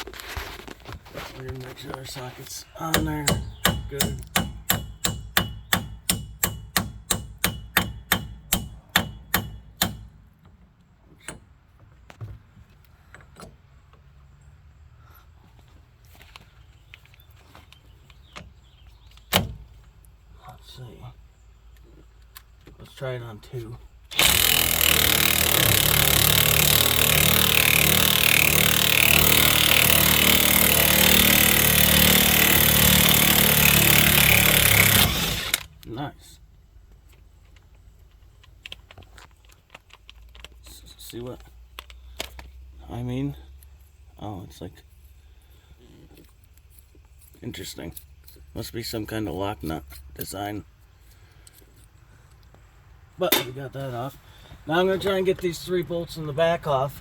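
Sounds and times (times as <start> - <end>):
impact wrench hammering: 2.8 - 10.2, 24.1 - 35.7, 53.3 - 53.6
metal-on-metal blows on a socket: 2.9 - 10.2.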